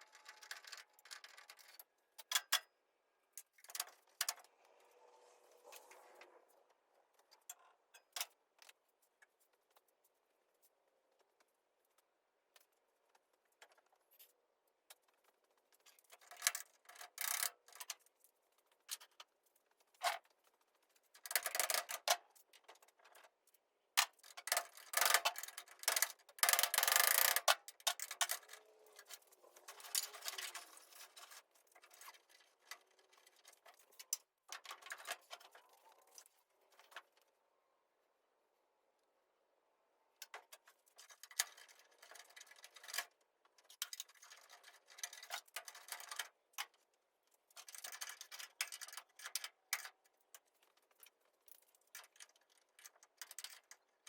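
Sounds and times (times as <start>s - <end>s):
plastic parts scraping and rattling: 0.0s - 2.6s, 3.4s - 37.4s, 40.2s - 54.0s.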